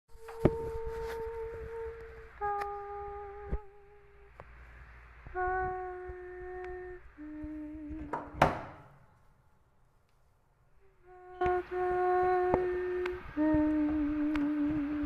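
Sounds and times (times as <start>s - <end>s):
soft flute-like ambient notes: 0.1s - 8.4s, 10.8s - 15.0s
low hum: 0.1s - 15.0s
faint clicks: 0.2s - 8.3s, 10.0s - 10.3s, 11.3s - 15.0s.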